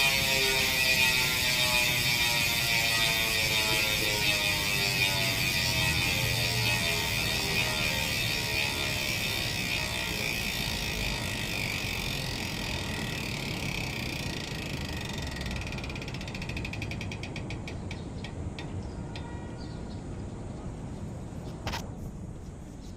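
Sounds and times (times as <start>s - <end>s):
bicycle hub freewheel clicking: 0.0s - 19.3s.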